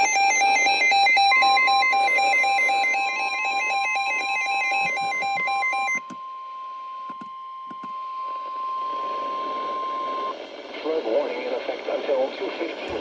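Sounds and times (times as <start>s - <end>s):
warbling two-pitch alarm tone: 0.0s - 10.4s
steady alarm tone: 0.0s - 10.7s.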